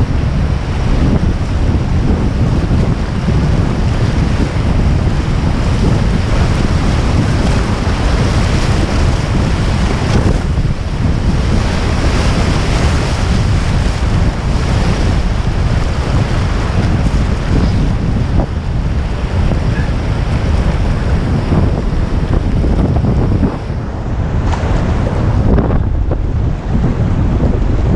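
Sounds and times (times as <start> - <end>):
rushing river water: 0.0 - 27.9
wind buffeting microphone: 0.0 - 27.9.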